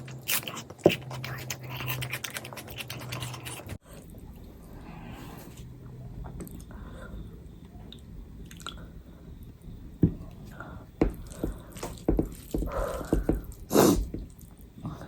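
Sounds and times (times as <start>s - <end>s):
wet chewing and smacking: 0.0s - 4.4s.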